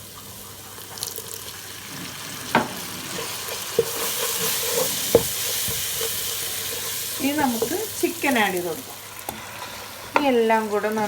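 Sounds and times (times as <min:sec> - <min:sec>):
food sizzling in a pan: 0:00.0 - 0:11.0
utensil knocking against pan: 0:05.1 - 0:05.9.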